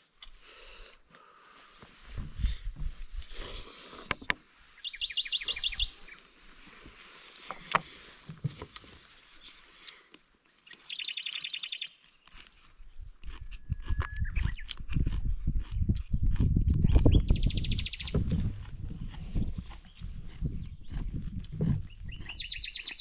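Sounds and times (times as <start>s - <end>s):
songbird trilling: 4.8s - 6.2s, 10.6s - 12.0s, 17.0s - 18.2s, 21.9s - 23.0s.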